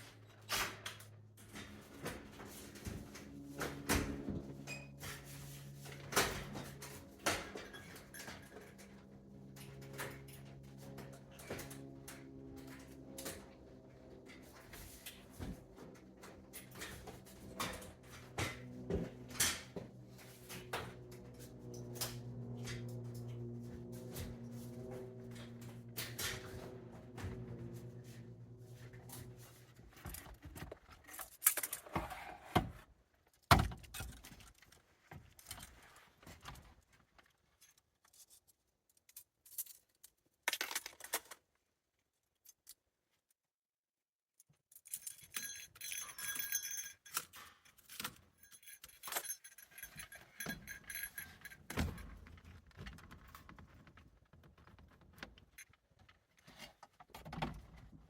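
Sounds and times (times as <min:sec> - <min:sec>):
metallic jingling: 0:45.0 - 0:47.3.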